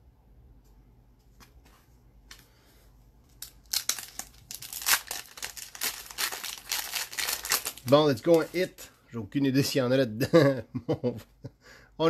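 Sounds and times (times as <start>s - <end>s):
card pack wrapper crinkling and tearing: 3.3s - 8.8s.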